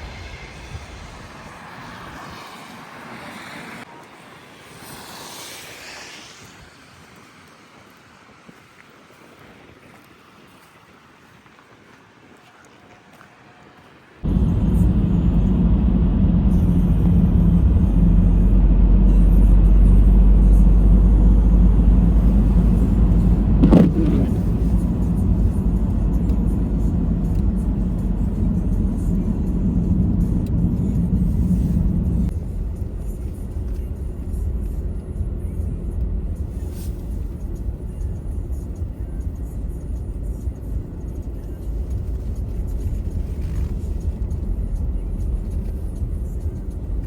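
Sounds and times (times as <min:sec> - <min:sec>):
motor vehicle rumble: 0:00.0 - 0:03.9, 0:14.2 - 0:47.0.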